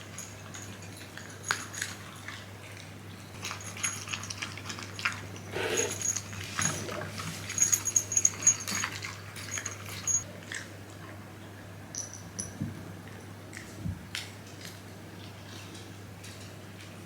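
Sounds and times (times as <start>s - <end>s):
light metallic jingling: 5.4s - 10.3s.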